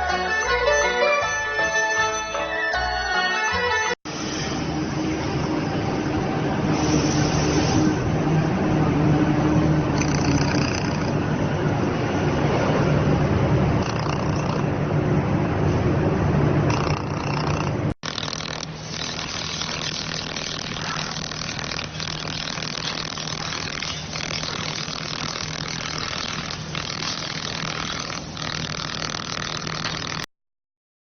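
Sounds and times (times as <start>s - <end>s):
machine running with low hum: 18.0s - 30.3s.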